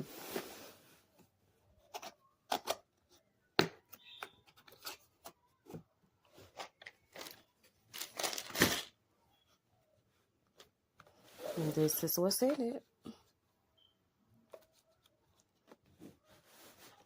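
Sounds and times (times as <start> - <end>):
packaging rustling: 6.8 - 8.9.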